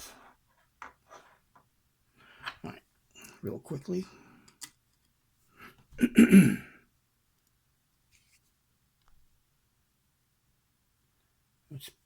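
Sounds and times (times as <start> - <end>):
man clearing his throat: 6.0 - 6.8.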